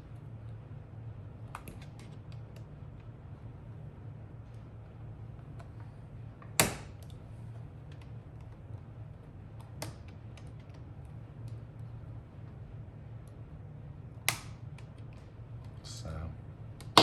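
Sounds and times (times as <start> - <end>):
low steady hum: 0.0 - 17.0
plastic clips snapping loose: 14.2 - 15.0.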